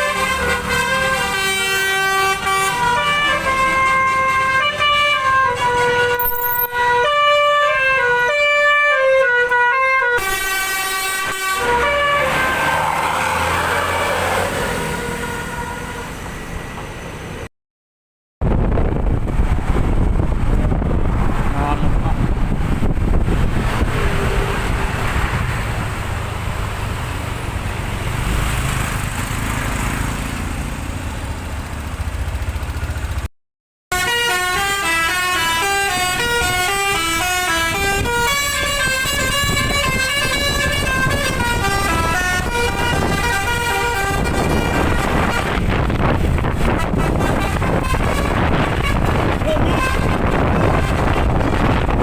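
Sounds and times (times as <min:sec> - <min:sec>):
musical air horn playing a tune: 0:00.0 - 0:12.7, 0:33.9 - 0:45.8, 0:46.6 - 0:51.2
vehicle and road noise: 0:00.0 - 0:17.5, 0:18.4 - 0:33.3, 0:33.9 - 0:52.0.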